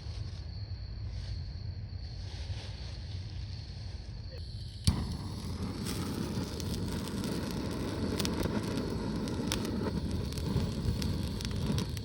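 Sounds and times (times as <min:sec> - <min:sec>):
low rush of flame: 0:04.4 - 0:12.0
wood fire crackles and pops: 0:04.6 - 0:12.0.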